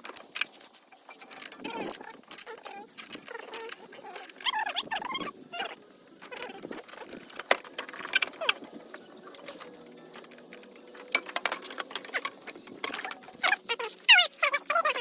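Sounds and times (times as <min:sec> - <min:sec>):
metal tools clinking: 0:00.0 - 0:15.0.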